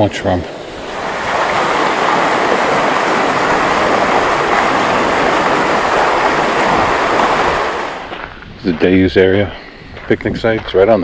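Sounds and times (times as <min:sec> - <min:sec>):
water rushing over waterfall: 0:00.5 - 0:08.1.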